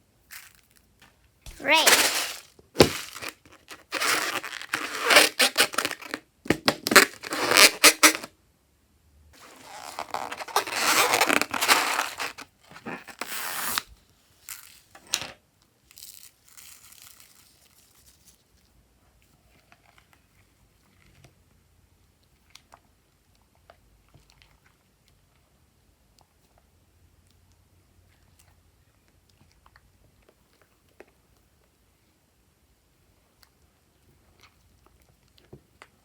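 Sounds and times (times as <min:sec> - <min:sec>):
crinkly tearing and crackling: 0:01.5 - 0:08.3, 0:09.4 - 0:15.2, 0:15.9 - 0:18.5
faint slime squishes: 0:16.8 - 0:36.0.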